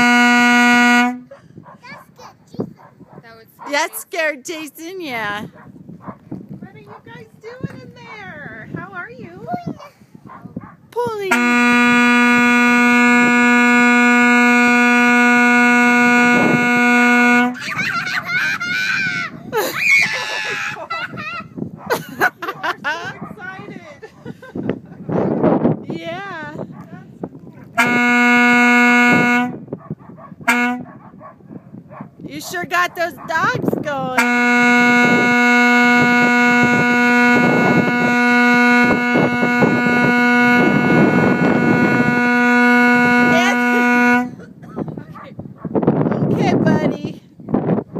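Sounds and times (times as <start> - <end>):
truck horn blast: 0.0 - 1.4, 11.2 - 17.8, 27.8 - 29.7, 30.4 - 30.9, 34.1 - 44.6.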